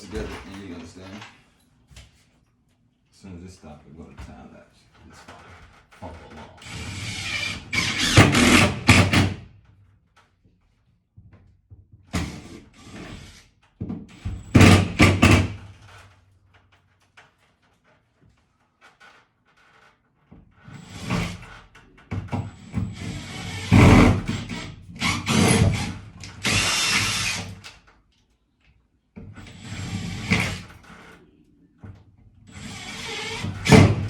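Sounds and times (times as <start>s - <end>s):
cordless drill driving screws: 6.6s - 9.2s, 22.6s - 27.6s, 29.4s - 30.7s, 32.5s - 34.0s.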